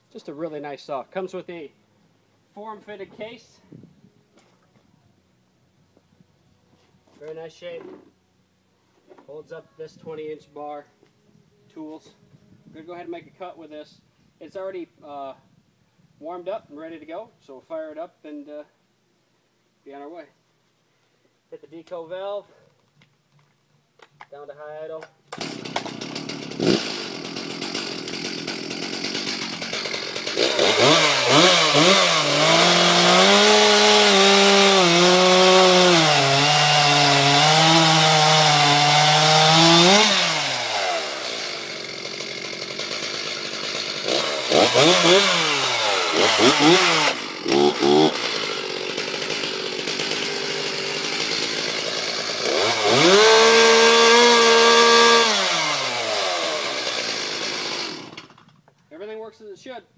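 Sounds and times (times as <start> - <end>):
chainsaw cutting wood: 25.3 - 58.7
chainsaw idling and revving: 25.4 - 58.6.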